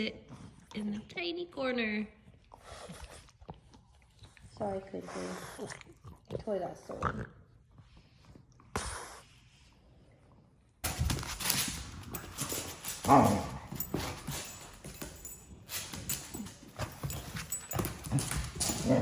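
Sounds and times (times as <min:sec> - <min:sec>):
dogs scuffling: 0:10.8 - 0:19.0.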